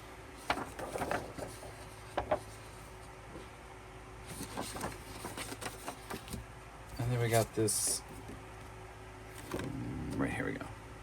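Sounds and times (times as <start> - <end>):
paper rustling: 0.4 - 3.4, 4.2 - 6.4.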